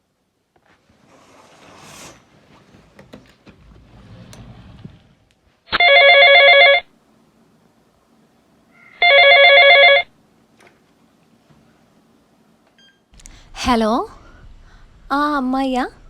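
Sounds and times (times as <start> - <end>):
phone ringtone pulsing tones: 5.8 - 6.9, 9.0 - 10.1.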